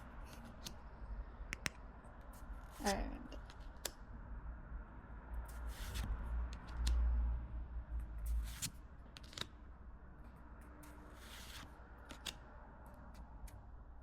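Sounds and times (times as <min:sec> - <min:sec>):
cards and wrappers scraping: 0:10.9 - 0:12.4.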